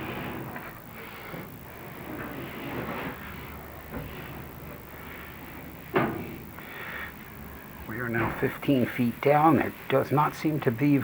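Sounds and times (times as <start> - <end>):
cable scraping in a duct: 0.0 - 5.8.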